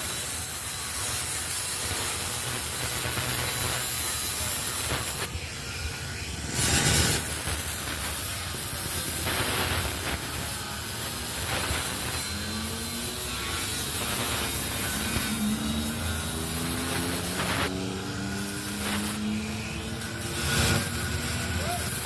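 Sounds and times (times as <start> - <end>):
angle grinder grinding metal: 0.0 - 22.0.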